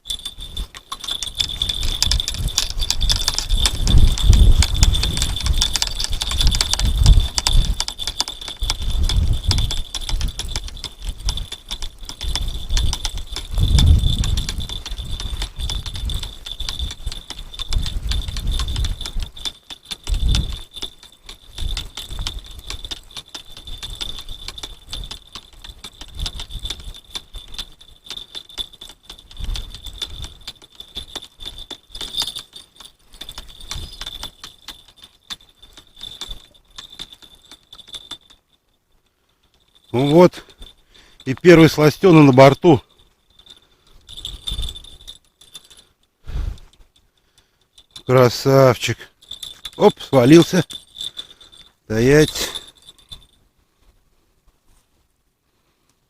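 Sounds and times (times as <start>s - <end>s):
fine rattling or clicking: 0.0s - 53.5s
strong wind buffeting microphone: 0.3s - 19.4s, 20.0s - 20.8s, 46.3s - 46.7s.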